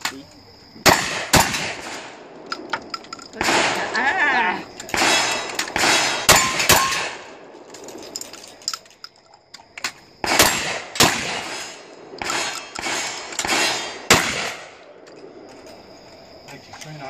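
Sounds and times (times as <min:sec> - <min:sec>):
shotgun shots: 0:00.8 - 0:02.3, 0:03.4 - 0:04.0, 0:04.9 - 0:07.5, 0:10.2 - 0:14.9
quiet clicks and clanks: 0:07.6 - 0:10.0.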